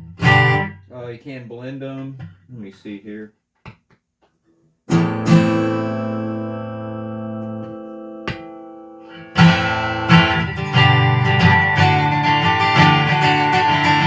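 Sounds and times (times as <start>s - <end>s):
acoustic guitar chords strummed: 0.0s - 0.8s, 4.9s - 14.0s.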